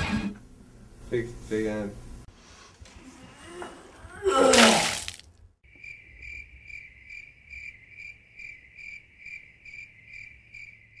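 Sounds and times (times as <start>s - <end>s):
cricket chirping: 5.6s - 11.0s.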